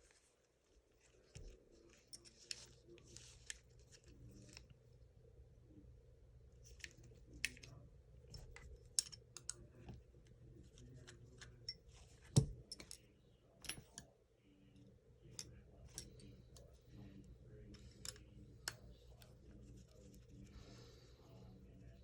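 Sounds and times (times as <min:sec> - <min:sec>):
small parts clicking and tapping: 0:06.6 - 0:10.0, 0:10.6 - 0:14.1, 0:15.2 - 0:20.3.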